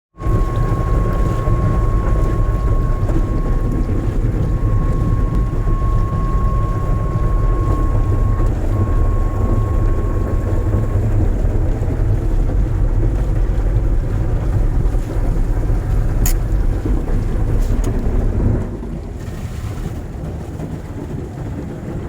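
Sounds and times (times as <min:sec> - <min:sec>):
thin high tone: 0:00.2 - 0:12.4
heavy rain rumbling: 0:00.2 - 0:20.0.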